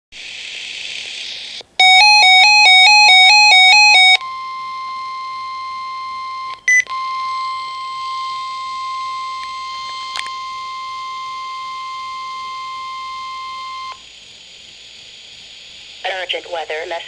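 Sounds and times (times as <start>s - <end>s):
two-pitch beeping alarm: 1.8s - 14.0s.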